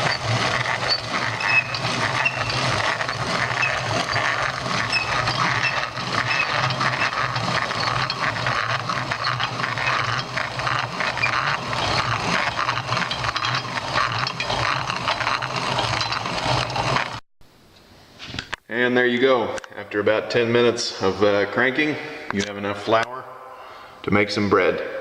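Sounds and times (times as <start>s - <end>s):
hand grinder crunching grain: 0.0s - 17.2s
rapid clicks: 0.0s - 17.2s.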